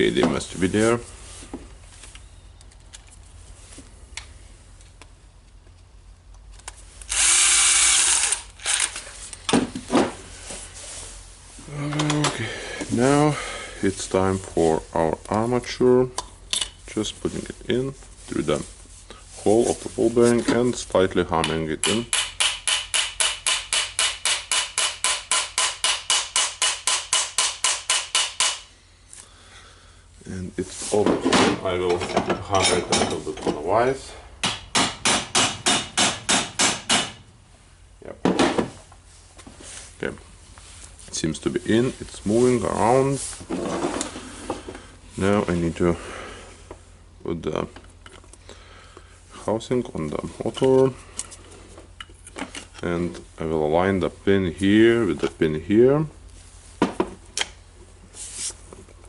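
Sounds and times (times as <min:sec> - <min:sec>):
cordless drill running: 0:07.1 - 0:08.9.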